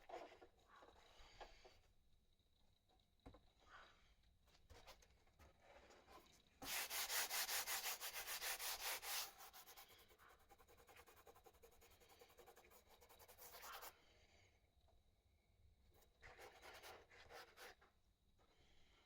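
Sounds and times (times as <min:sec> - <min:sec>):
hand sanding with abrasive paper: 0:06.6 - 0:13.8.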